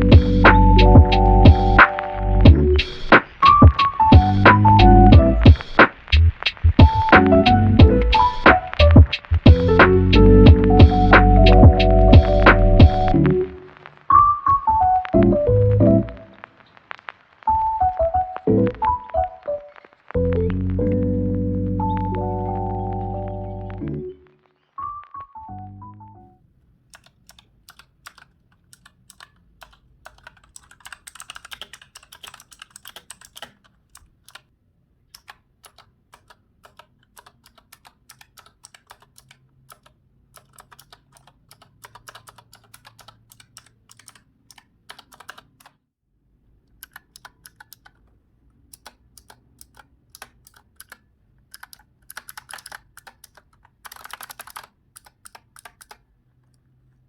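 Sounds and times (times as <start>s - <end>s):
mechanical keyboard typing: 26.9s - 34.5s, 35.1s - 45.8s, 46.7s - 56.6s.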